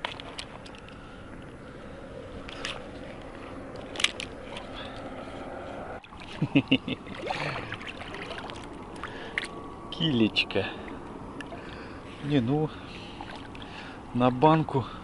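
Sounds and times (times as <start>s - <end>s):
flowing river water: 0.0s - 15.0s.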